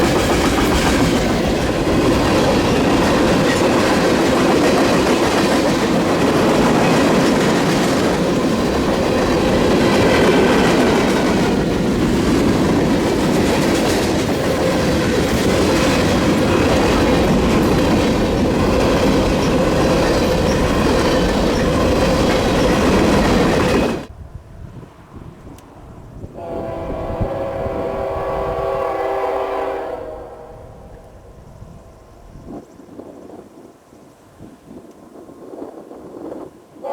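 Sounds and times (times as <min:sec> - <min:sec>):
freight train wheels clicking: 0:00.0 - 0:24.1.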